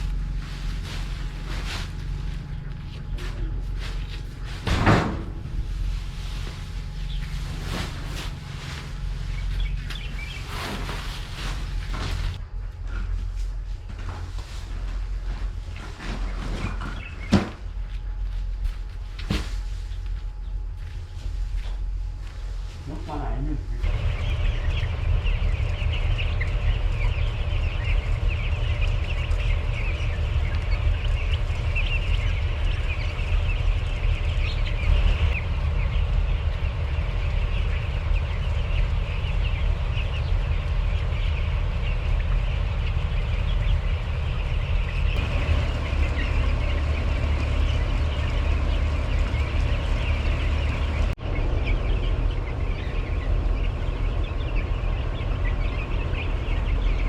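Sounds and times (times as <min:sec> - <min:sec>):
low machine hum: 0:00.0 - 0:57.0
flock of poultry calling: 0:05.7 - 0:12.4, 0:14.1 - 0:18.0, 0:22.9 - 0:57.0.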